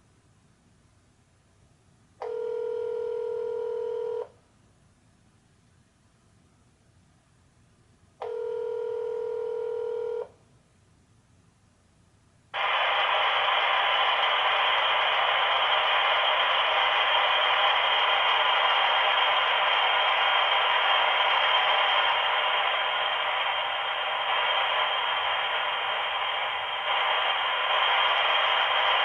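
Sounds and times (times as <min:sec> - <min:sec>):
loud steady hiss on phone line: 0:00.0 - 0:29.0
phone ringback tone: 0:02.2 - 0:04.3, 0:08.2 - 0:10.3.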